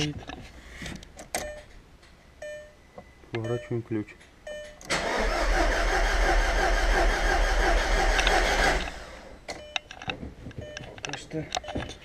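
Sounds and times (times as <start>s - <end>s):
engine cranking on starter: 4.9s - 9.2s.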